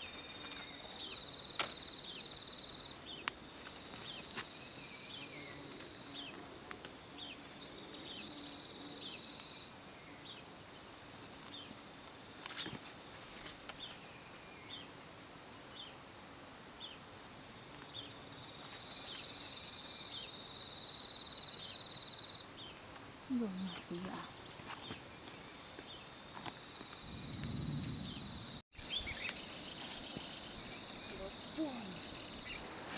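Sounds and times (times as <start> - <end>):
crickets chirping: 0.0 - 32.9
sharp click: 1.6 - 1.8.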